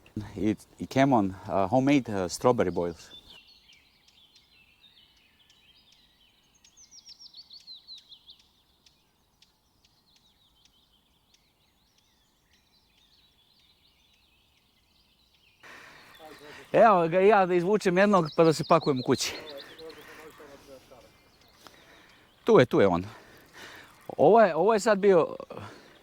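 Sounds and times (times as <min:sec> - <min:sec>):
short bird chirps: 0:15.5 - 0:17.4.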